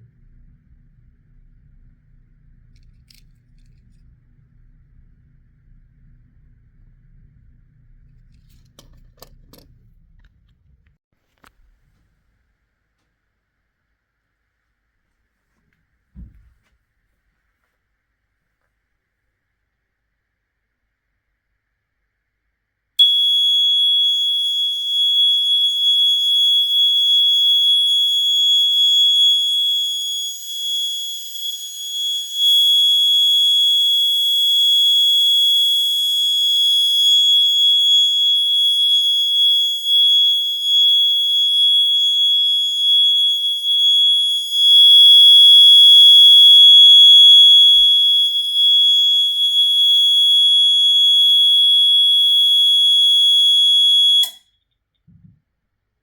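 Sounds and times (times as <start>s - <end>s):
shrill fire alarm tone: 23.0s - 54.5s.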